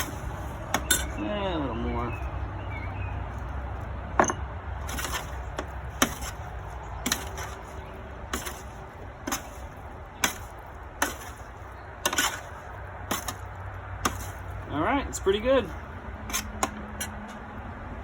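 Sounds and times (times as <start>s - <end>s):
utensils knocking against a bowl: 0.7s - 1.2s.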